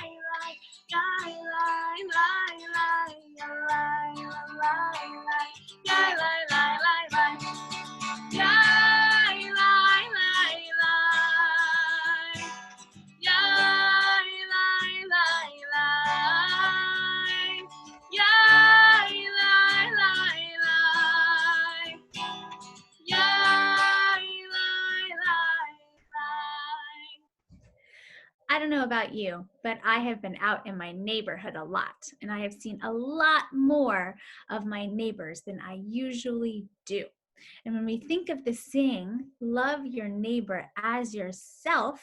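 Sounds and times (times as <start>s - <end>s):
person singing: 0.0s - 7.6s, 8.3s - 12.6s, 13.2s - 22.2s, 23.1s - 27.1s
acoustic guitar: 0.0s - 27.8s.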